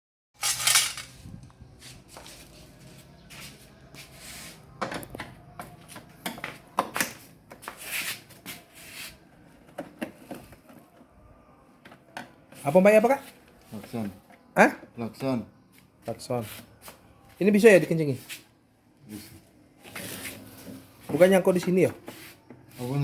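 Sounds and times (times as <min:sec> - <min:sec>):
objects being handled: 0:00.4 - 0:11.1.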